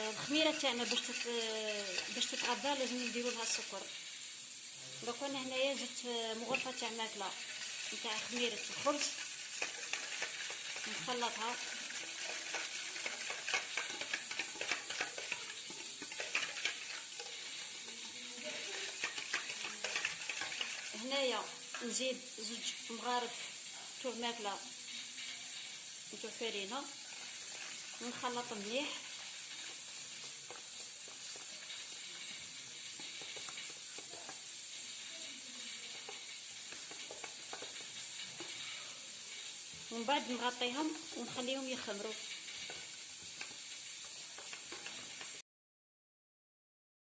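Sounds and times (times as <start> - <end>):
utensil scraping and tapping a bowl: 0.0 - 3.7, 7.4 - 21.0, 29.6 - 39.0, 44.4 - 45.4
steady high hiss: 0.0 - 45.4.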